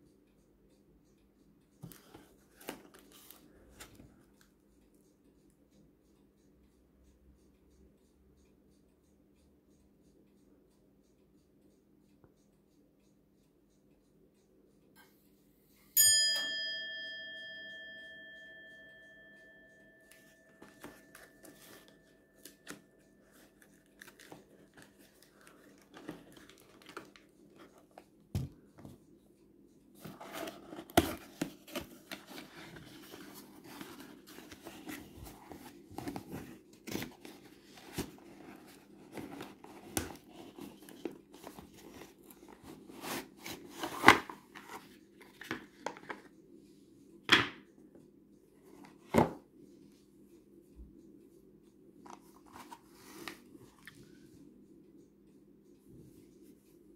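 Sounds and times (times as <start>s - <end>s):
bell-like ding: 16.0s - 22.1s.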